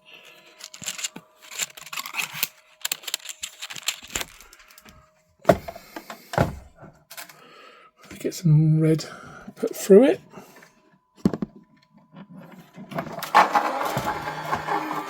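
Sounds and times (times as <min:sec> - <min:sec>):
clicks and rustles of handling: 0:00.1 - 0:07.4
heavy thumps: 0:05.4 - 0:06.9.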